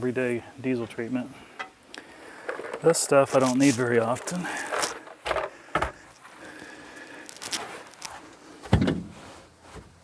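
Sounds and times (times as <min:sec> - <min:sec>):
shuffling: 0:02.2 - 0:10.0.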